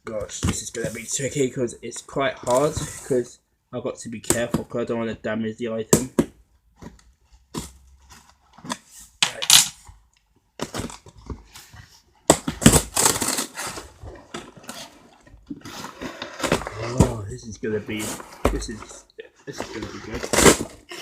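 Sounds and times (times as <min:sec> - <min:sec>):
box and tape rustling and tearing: 0:02.4 - 0:03.2, 0:10.6 - 0:21.0.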